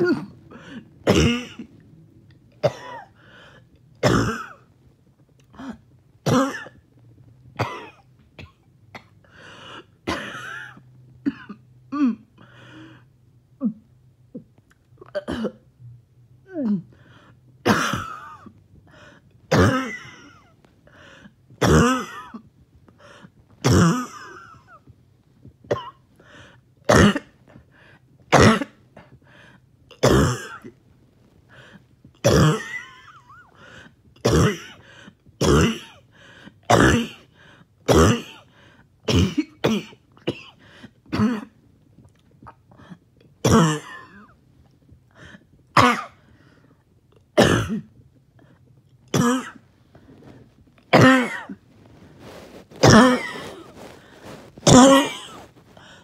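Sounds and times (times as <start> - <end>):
person coughing harshly: 0.0 - 1.7, 2.6 - 3.2, 4.0 - 4.7, 5.6 - 6.8, 7.6 - 9.1, 9.8 - 12.3, 15.1 - 15.6, 17.6 - 20.6, 21.6 - 24.9, 25.7 - 26.1, 26.9 - 27.4, 28.3 - 29.2, 29.9 - 30.8, 32.2 - 36.1, 36.7 - 37.3, 37.9 - 38.5, 39.1 - 41.6, 42.5 - 44.4, 45.2 - 46.3, 47.4 - 47.9, 49.1 - 49.6, 50.9 - 51.6, 52.2 - 56.0
rasping throat clearing: 0.0 - 1.8, 4.0 - 4.7, 17.6 - 24.9, 25.7 - 27.6, 29.9 - 30.8, 31.6 - 44.4, 47.3 - 49.6, 50.9 - 51.6, 52.3 - 56.0.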